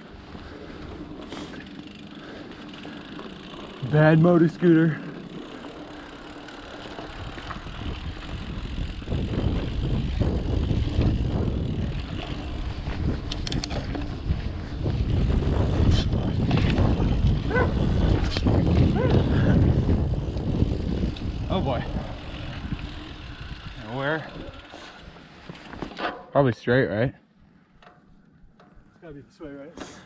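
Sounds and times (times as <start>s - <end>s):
bike tyres rolling on dirt: 0.0s - 26.7s
wind buffeting microphone: 6.8s - 24.6s.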